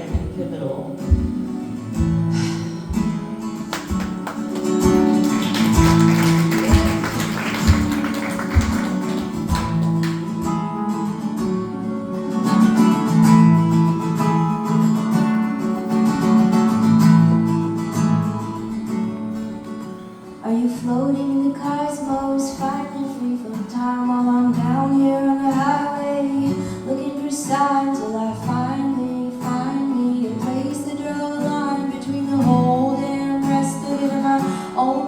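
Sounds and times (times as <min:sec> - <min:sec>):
acoustic guitar picked and strummed: 0:00.0 - 0:35.0
low thumps: 0:00.1 - 0:04.2.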